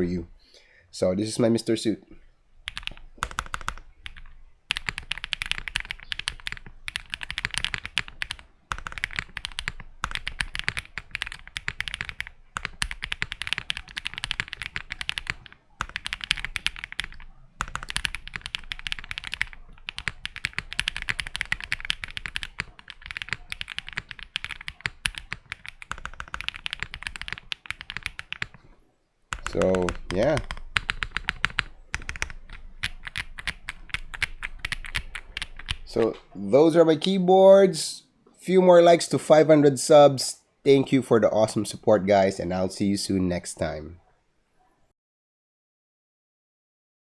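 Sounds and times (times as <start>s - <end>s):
typing on mechanical keyboard: 2.7s - 28.7s, 29.3s - 36.2s.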